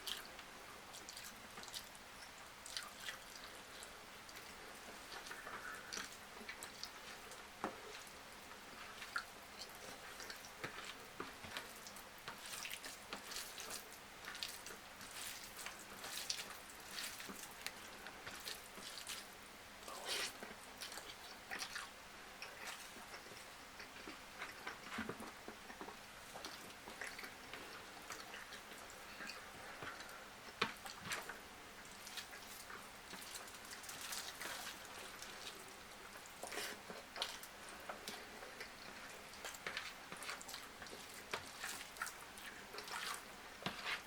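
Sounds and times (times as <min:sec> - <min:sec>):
person chewing food: 0:00.0 - 0:44.0.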